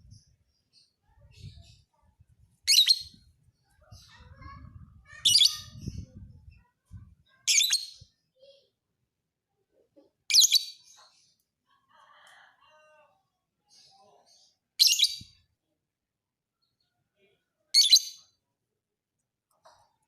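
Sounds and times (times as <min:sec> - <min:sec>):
faint soft bird twittering: 0:00.0 - 0:08.7
bird chattering song: 0:02.7 - 0:03.3, 0:17.8 - 0:18.3.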